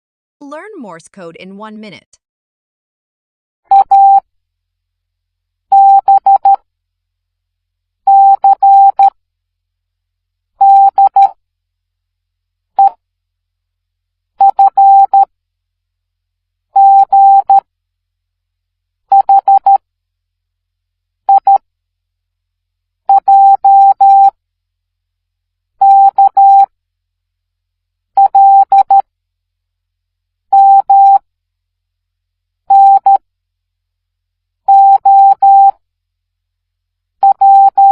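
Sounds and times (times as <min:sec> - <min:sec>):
morse code beeps: 0:34.7 - 0:35.7, 0:37.2 - 0:37.9.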